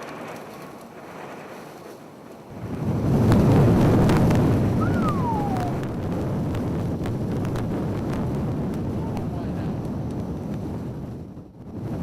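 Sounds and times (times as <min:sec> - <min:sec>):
wind buffeting microphone: 0:00.0 - 0:12.0
short falling whistle: 0:04.8 - 0:06.0.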